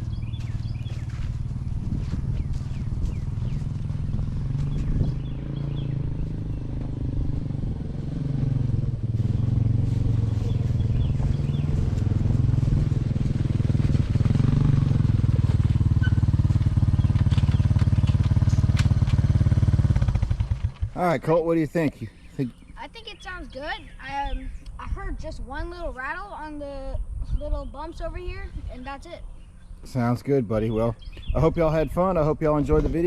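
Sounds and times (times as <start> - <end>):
atv engine running: 0.0 - 33.0.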